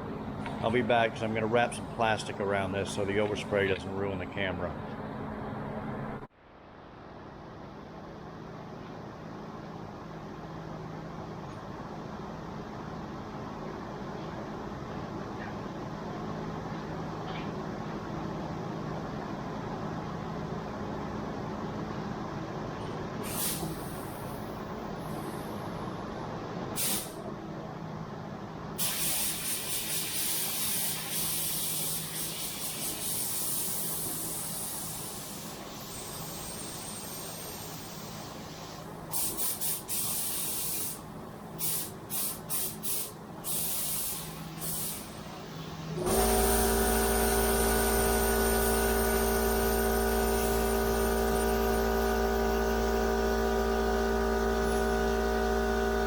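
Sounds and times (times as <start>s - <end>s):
spray paint hissing: 28.8s - 41.0s, 41.6s - 45.1s
machine humming: 45.4s - 56.0s.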